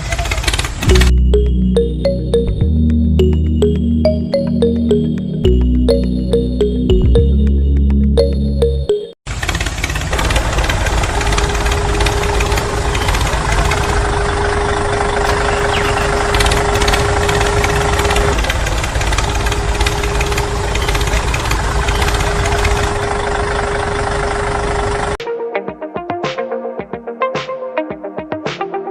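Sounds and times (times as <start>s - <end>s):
motor rattling: 9.3s - 25.2s.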